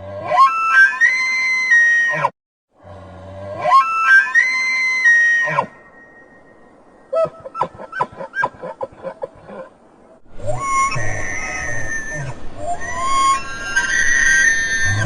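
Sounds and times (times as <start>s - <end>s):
elk bugling: 10.4s - 15.0s.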